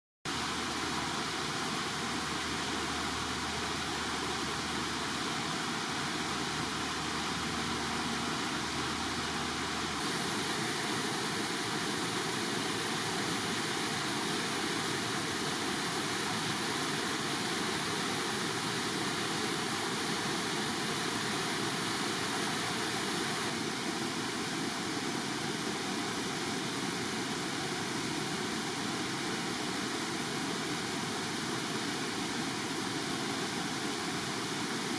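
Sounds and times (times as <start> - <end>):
water pouring over waterfall: 10.0 - 24.4.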